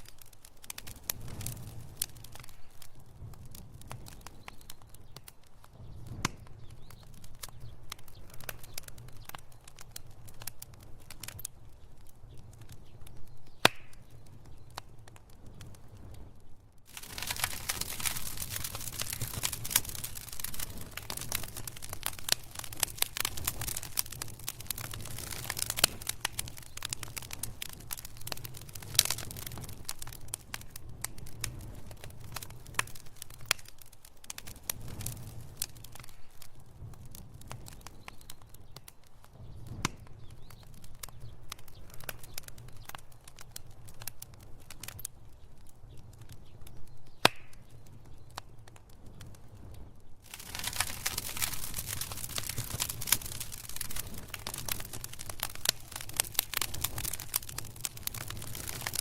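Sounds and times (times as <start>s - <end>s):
low rumble of flames: 0.0s - 59.0s
wood fire crackling and popping: 0.0s - 59.0s.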